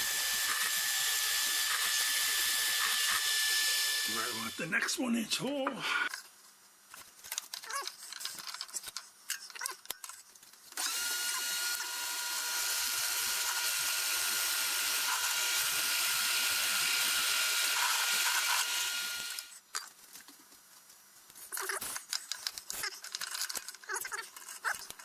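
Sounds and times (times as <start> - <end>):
drill press boring into wood: 0.0 - 4.6, 10.8 - 19.5.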